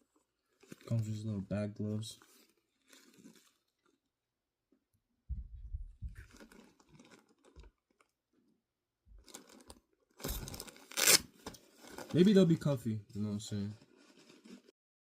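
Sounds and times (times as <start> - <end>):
packaging rustling and crinkling: 0.0 - 1.3, 2.0 - 4.0, 6.1 - 8.2, 9.2 - 14.7.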